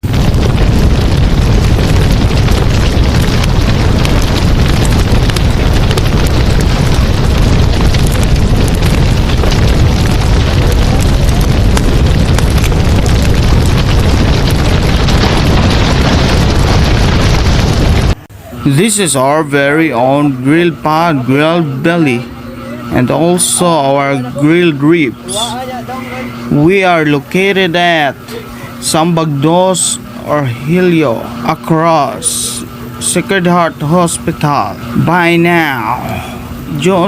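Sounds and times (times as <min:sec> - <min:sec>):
deep rumble: 0:00.0 - 0:37.0.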